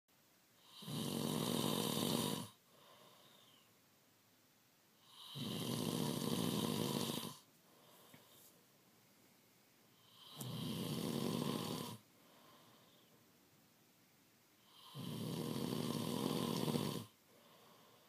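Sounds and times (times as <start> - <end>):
man snoring: 0.6 - 2.9, 5.0 - 7.4, 10.0 - 12.0, 14.6 - 17.8
soft breathing: 2.4 - 3.8, 6.6 - 10.5, 11.9 - 13.4, 17.0 - 18.0.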